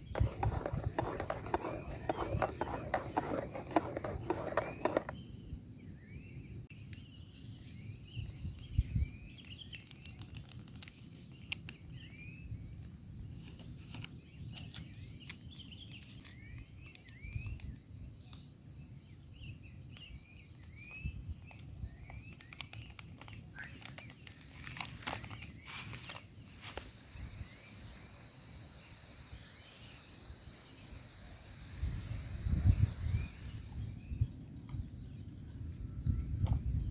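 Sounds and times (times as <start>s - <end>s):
sharp clicks and crinkling: 9.7s - 11.8s, 20.6s - 26.9s.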